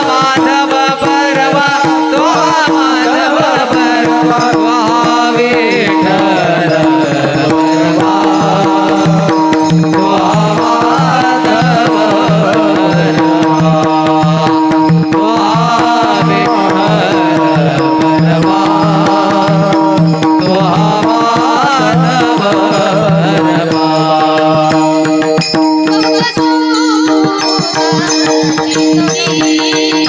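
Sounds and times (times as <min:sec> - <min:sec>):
bright percussion strikes: 0:00.0 - 0:30.0
drum playing: 0:00.0 - 0:30.0
woman singing: 0:25.8 - 0:30.0.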